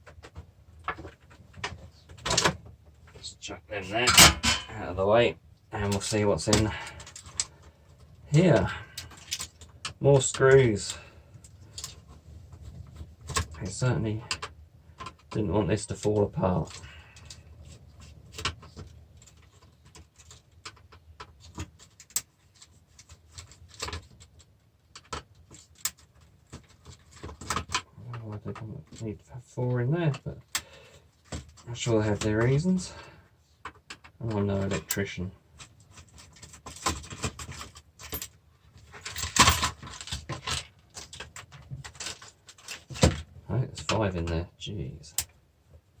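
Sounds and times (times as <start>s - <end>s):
metal parts clicking and clinking: 3.9s - 4.8s, 36.0s - 43.1s
metal parts clinking: 3.9s - 4.8s.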